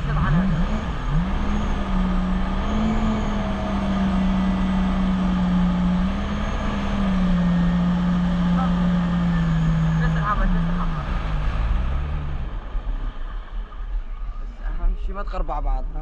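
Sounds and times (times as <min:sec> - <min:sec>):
jet ski engine running: 0:00.0 - 0:11.4.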